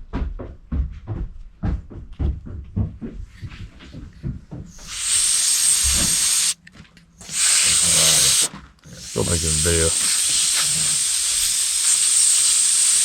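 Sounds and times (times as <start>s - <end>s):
pressurised spray hissing: 4.7s - 6.6s, 7.2s - 13.0s.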